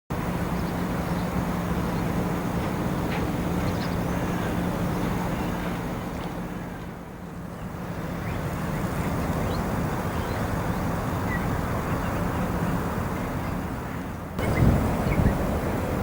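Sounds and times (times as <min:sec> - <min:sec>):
ferry engines humming: 0:00.1 - 0:16.0
gusty low rumble: 0:08.5 - 0:16.0.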